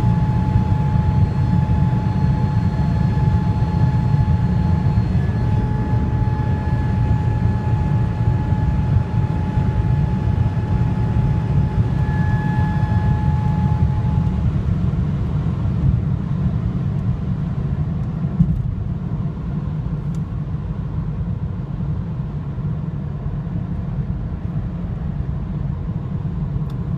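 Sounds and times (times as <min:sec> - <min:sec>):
high-pitched whine: 0:00.0 - 0:16.4
road and wind rumble in car cabin: 0:00.0 - 0:26.9.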